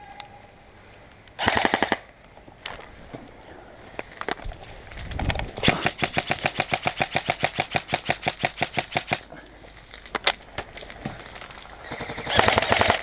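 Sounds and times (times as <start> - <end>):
airsoft rifle firing: 1.4 - 2.0, 5.6 - 9.3, 11.8 - 13.0.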